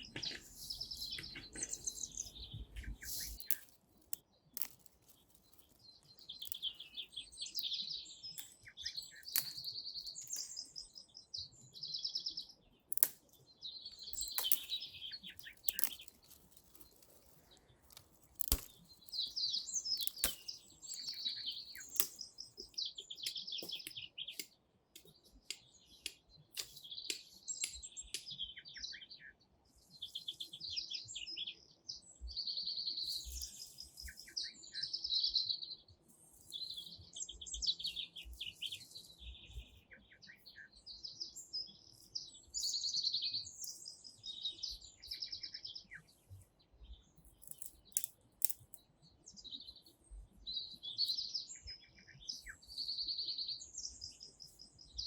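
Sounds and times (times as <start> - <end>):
songbirds singing: 0.0 - 55.0
sharp clicks: 2.8 - 7.0, 12.9 - 13.4, 14.1 - 28.3.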